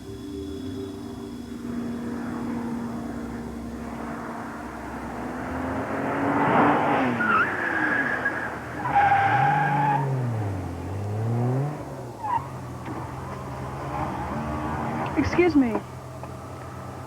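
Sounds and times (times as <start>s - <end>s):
fast car engine passing: 1.2s - 17.0s.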